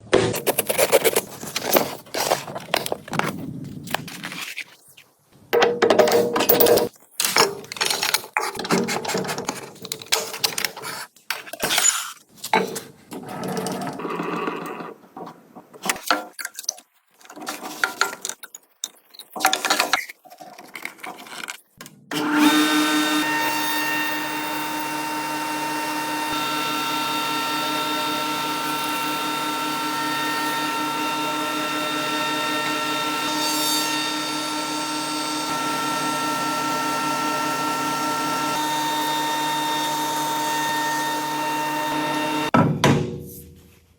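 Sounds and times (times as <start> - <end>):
knocks and scraping: 0.0 - 22.0.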